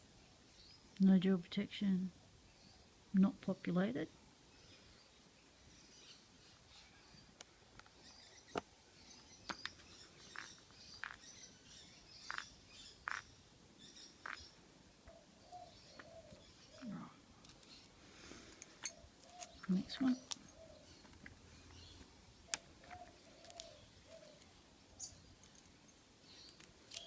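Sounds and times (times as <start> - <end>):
faint bird chirps: 4.5 - 17.9, 18.8 - 25.6
padlock parts clicking: 15.9 - 18.0, 18.6 - 21.8, 22.5 - 27.0.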